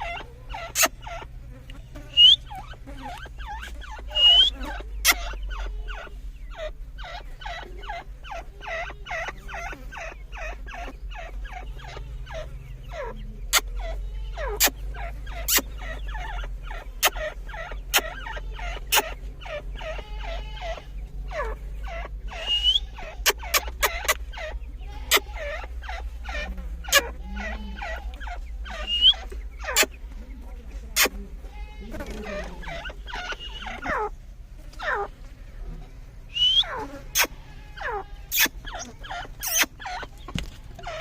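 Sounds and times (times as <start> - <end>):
partridges chattering calls: 0.0 - 35.5, 36.2 - 41.0
steady low hum: 0.0 - 41.0.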